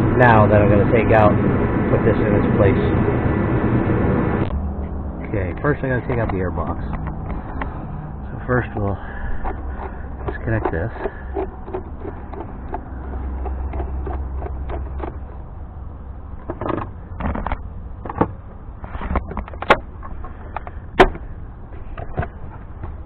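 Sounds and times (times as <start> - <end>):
low steady hum: 0.0 - 23.0
plastic parts clicking and rattling: 9.3 - 15.3, 16.4 - 23.0.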